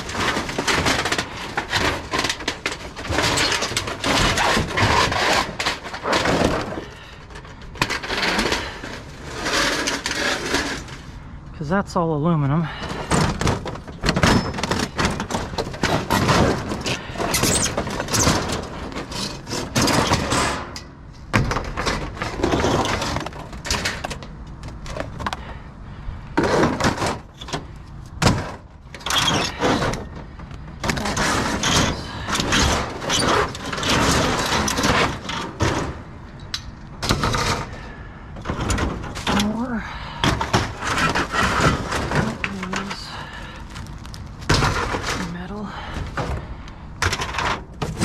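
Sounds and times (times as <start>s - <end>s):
metal scraping: 0.0s - 11.2s
scrap metal clattering and banging: 0.0s - 11.2s, 12.6s - 48.0s.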